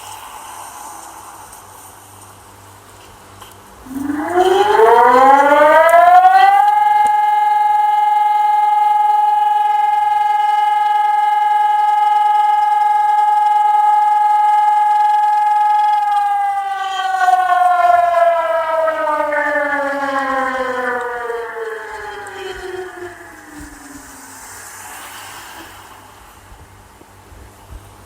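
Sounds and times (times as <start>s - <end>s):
siren rising to a high note: 3.8s - 25.8s.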